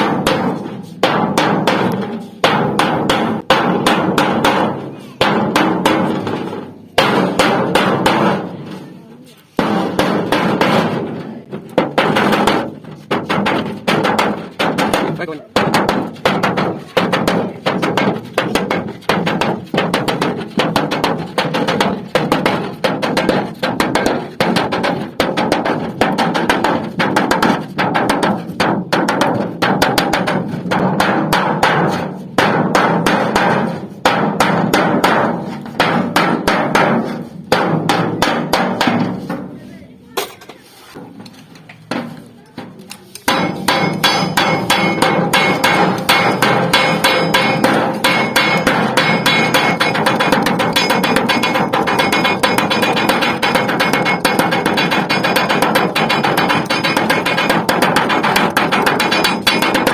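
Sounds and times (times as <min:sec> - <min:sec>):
hammer on sheet metal: 0:00.0 - 0:08.6, 0:09.5 - 0:39.6, 0:43.2 - 0:59.9.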